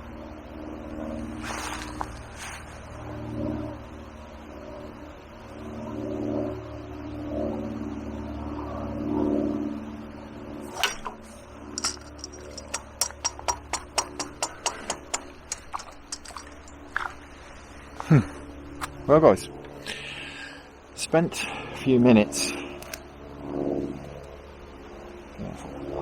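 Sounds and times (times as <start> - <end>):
engine hum: 0.0 - 26.0
sharp clicks: 22.8 - 23.0.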